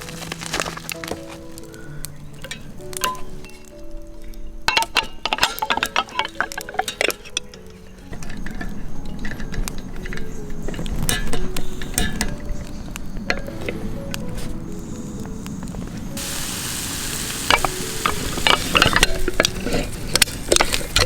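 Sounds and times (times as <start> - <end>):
hard objects clinking: 0.0 - 14.0, 16.2 - 21.0
sizzling crackle: 0.0 - 21.0
soft background music: 0.0 - 21.0.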